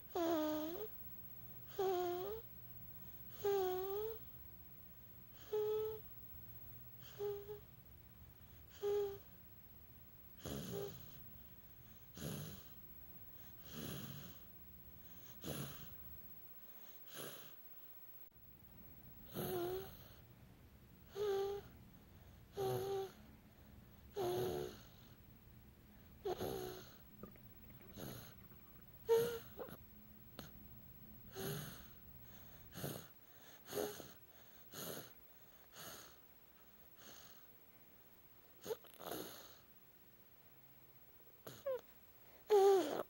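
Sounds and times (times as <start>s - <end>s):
wheezy squeaky snoring: 0.1s - 0.9s, 1.7s - 2.4s, 3.3s - 4.2s, 5.3s - 6.0s, 7.0s - 7.6s, 8.7s - 9.3s, 10.4s - 11.2s, 12.1s - 12.8s, 13.4s - 16.0s, 16.9s - 17.6s, 19.2s - 20.2s, 21.1s - 21.7s, 22.5s - 23.2s, 24.1s - 25.1s, 26.2s - 27.0s, 27.7s - 29.8s, 31.3s - 36.2s, 38.6s - 39.6s, 41.4s - 41.8s, 42.5s - 43.0s.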